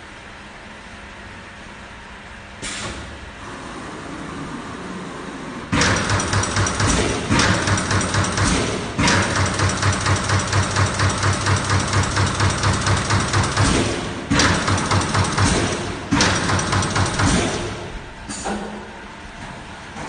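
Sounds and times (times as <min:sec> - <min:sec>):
machinery running with low pulse: 0:02.8 - 0:18.4.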